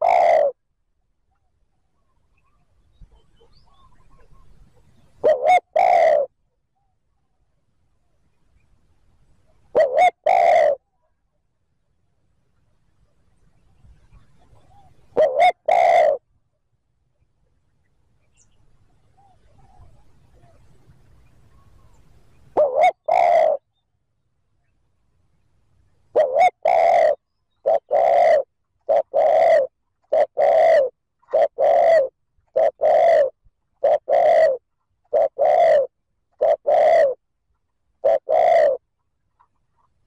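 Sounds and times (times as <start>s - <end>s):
dove cooing: 0.0s - 0.6s, 2.4s - 6.3s, 9.6s - 11.0s, 14.4s - 16.2s, 19.1s - 23.7s, 26.1s - 37.2s, 38.0s - 38.9s.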